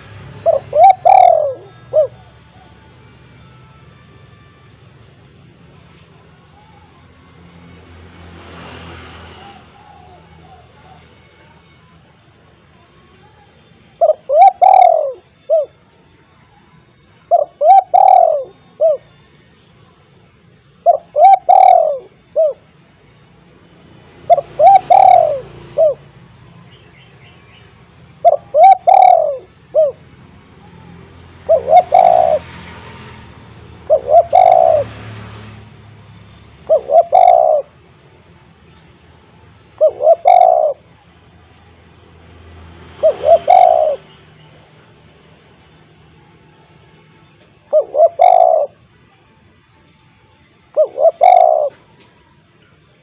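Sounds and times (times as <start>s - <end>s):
dove cooing: 0.0s - 2.9s, 9.3s - 11.1s, 14.0s - 15.8s, 17.3s - 19.1s, 20.8s - 22.8s, 24.1s - 26.2s, 28.2s - 35.0s, 36.6s - 37.8s, 39.7s - 41.0s, 42.8s - 44.2s, 47.5s - 48.9s, 50.6s - 52.1s.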